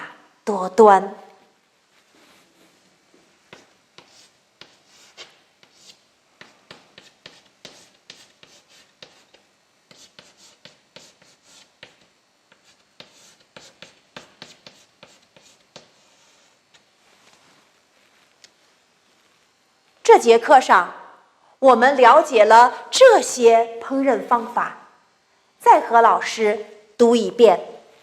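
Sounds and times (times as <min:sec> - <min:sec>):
pen scratching on surface: 0:03.5 - 0:16.5.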